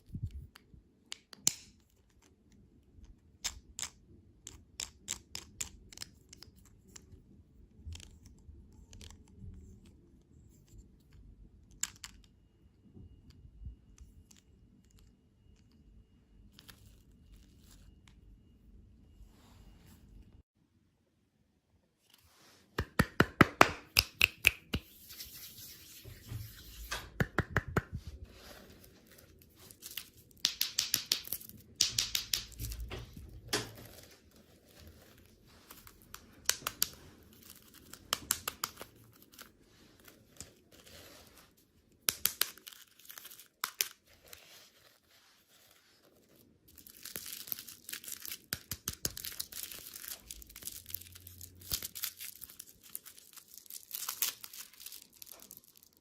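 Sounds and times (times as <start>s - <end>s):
plastic wrappers crinkling: 42.3s - 56.0s.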